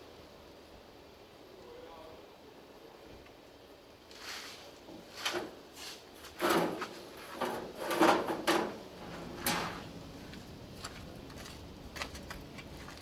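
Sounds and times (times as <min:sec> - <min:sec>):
objects scraping and knocking: 0:04.2 - 0:10.0.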